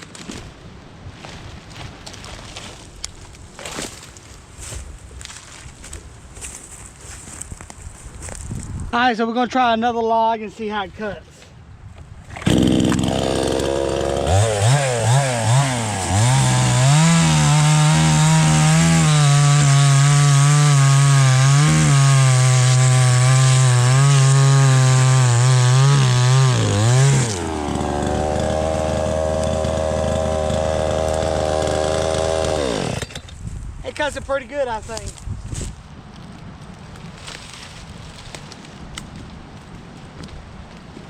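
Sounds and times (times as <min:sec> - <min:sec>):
chainsaw idling: 0:12.4 - 0:33.2
chainsaw revving and cutting log: 0:12.4 - 0:33.2.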